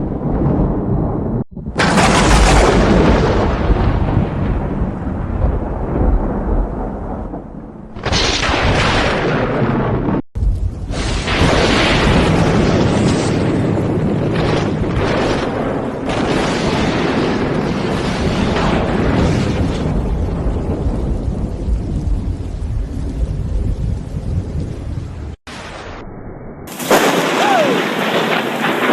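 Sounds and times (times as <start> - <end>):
thunderclaps rumbling: 0.0 - 28.9
rain hiss: 26.7 - 28.9.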